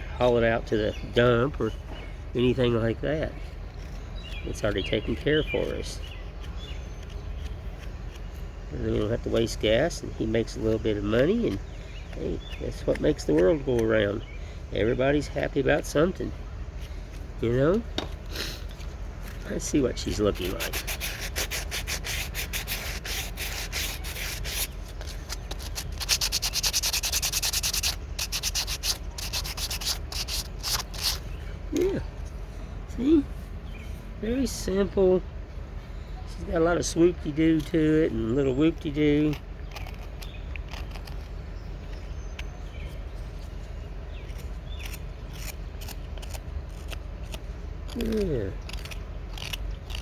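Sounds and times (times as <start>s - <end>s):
small birds chirping: 0.0s - 50.0s
steady low rumble: 0.0s - 50.0s
hand rubbing wooden carving: 2.4s - 32.4s, 36.8s - 50.0s.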